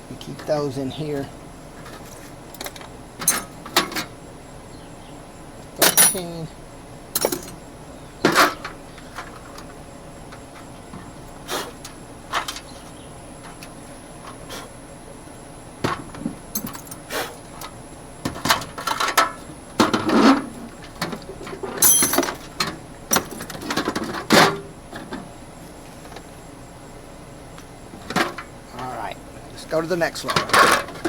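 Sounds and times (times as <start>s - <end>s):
metal tools clinking and clattering: 1.8s - 4.1s, 5.8s - 6.4s, 7.2s - 7.6s, 16.5s - 17.0s, 18.4s - 24.6s, 30.2s - 31.0s.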